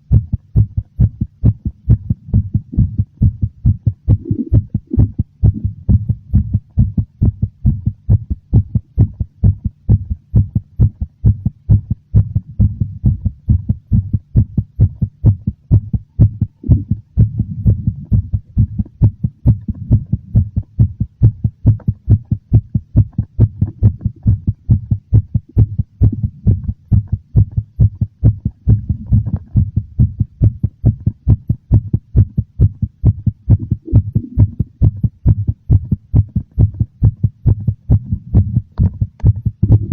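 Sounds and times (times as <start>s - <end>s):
heartbeat thumping: 0.0s - 39.9s.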